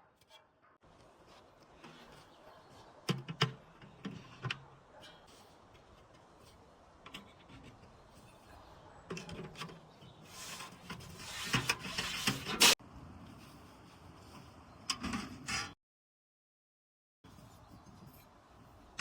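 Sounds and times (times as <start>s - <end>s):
metal parts rubbing and scraping: 10.2s - 12.8s.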